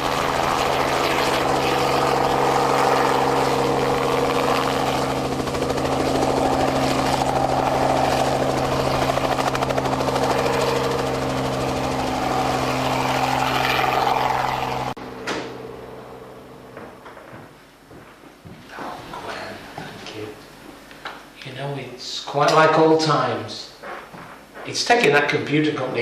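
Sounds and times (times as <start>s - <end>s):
helicopter engine and rotor: 0.0s - 16.7s.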